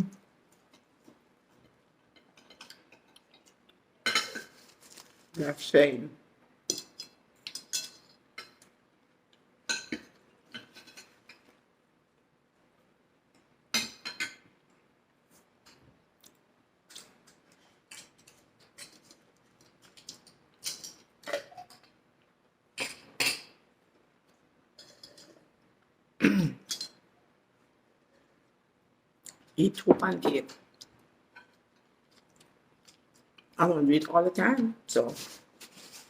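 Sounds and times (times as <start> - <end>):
cutlery clinking on a plate: 4.0 - 4.6, 6.7 - 8.6, 26.6 - 27.0.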